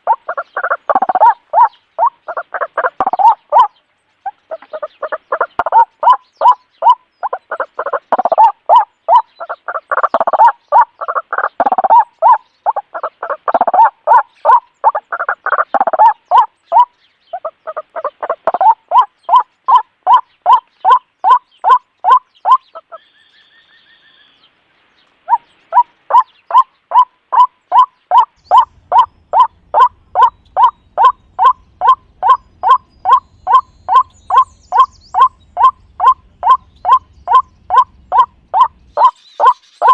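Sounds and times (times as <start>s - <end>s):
rapid animal calls: 0.0s - 23.1s, 25.3s - 39.9s.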